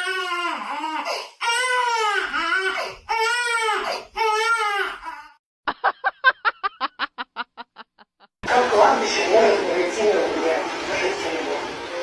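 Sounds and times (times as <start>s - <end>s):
baby crying: 0.0s - 5.4s.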